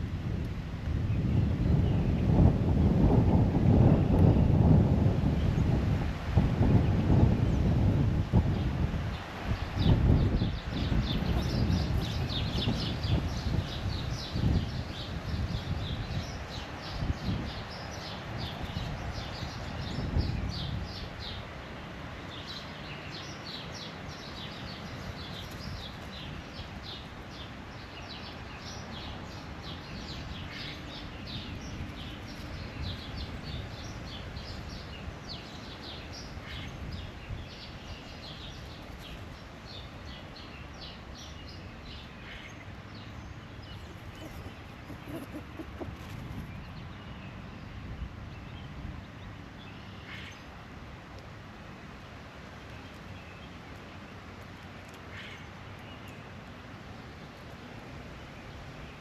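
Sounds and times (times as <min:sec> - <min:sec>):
outdoor background noise: 0:00.0 - 0:59.0
birds chirping: 0:08.5 - 0:21.5, 0:22.2 - 0:50.5.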